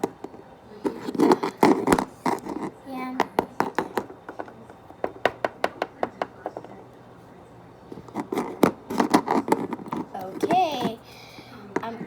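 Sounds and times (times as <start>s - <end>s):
plastic toys tapping hard surface: 1.1s - 6.7s.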